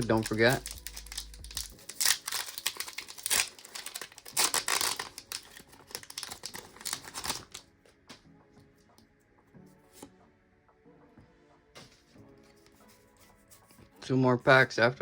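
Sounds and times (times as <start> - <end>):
foil wrapper crinkling: 0.0 - 7.6
faint background music: 0.0 - 15.0.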